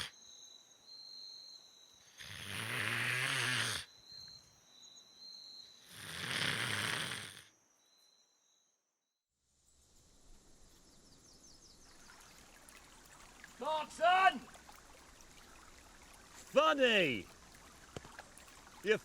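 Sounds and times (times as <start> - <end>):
man snoring: 2.2 - 3.9, 5.9 - 7.5.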